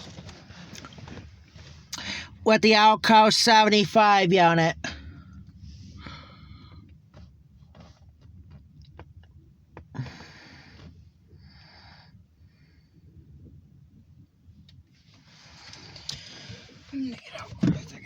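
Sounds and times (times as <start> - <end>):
faint low rumble: 0.0 - 18.0
soft breathing: 4.9 - 7.9, 10.0 - 13.4.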